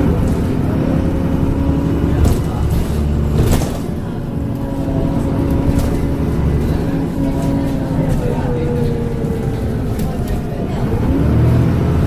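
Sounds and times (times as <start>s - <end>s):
bus engine droning: 0.0s - 12.0s.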